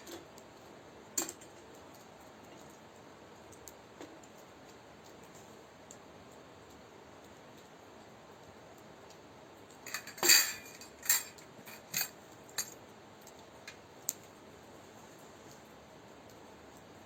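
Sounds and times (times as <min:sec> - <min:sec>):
metallic clinks and knocks: 0:09.9 - 0:12.8.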